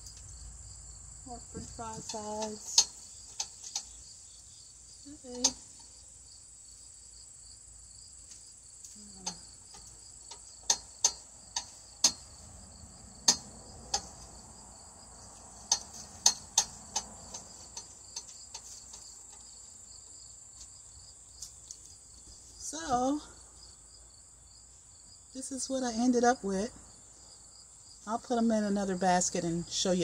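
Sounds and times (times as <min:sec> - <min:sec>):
insects chirring: 0:00.0 - 0:30.0
sharp clicks and knocks: 0:01.6 - 0:04.0, 0:09.2 - 0:12.5, 0:13.2 - 0:14.5, 0:15.2 - 0:19.7.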